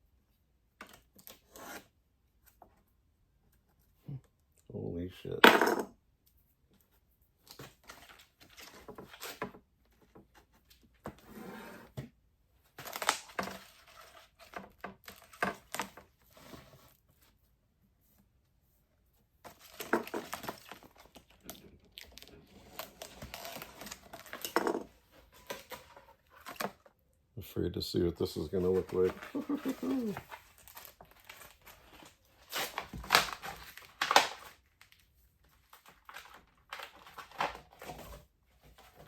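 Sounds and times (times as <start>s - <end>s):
plastic film crinkling: 19.5s - 24.6s, 28.4s - 37.9s.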